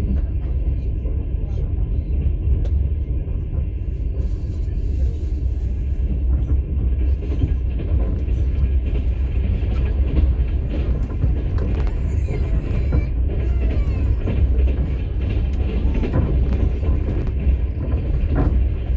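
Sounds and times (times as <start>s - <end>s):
train wheels rumbling on rails: 0.0s - 18.9s
train car clicks and rattles: 5.1s - 18.9s.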